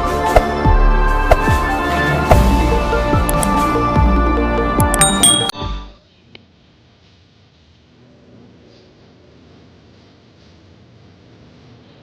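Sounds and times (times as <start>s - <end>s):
background music with a beat: 0.0s - 5.8s
short bright chime: 4.9s - 5.6s.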